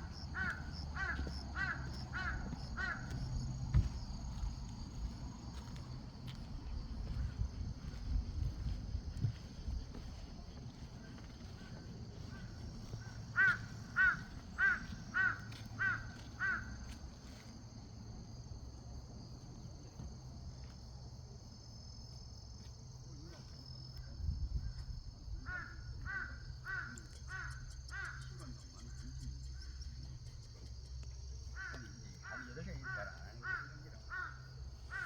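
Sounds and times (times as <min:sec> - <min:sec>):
crow cawing: 0:00.0 - 0:03.9, 0:11.5 - 0:17.4, 0:25.4 - 0:28.5, 0:31.5 - 0:35.0.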